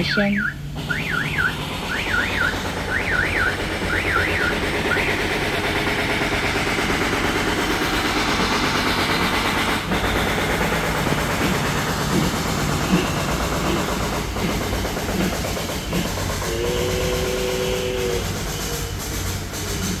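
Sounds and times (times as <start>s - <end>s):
warbling whistle-like tone: 0.0s - 6.5s
rushing rumbling train noise: 0.0s - 20.0s.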